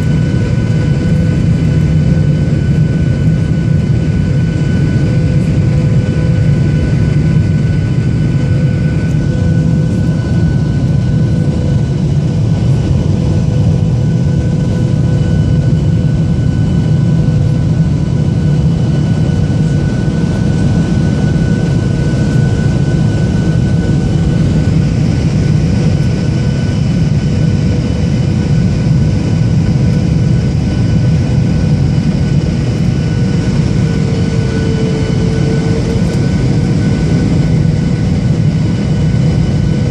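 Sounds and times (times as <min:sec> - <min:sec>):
faint engine whining tones: 0:00.0 - 0:39.9
jet engine rumble and rushing air: 0:00.0 - 0:39.9.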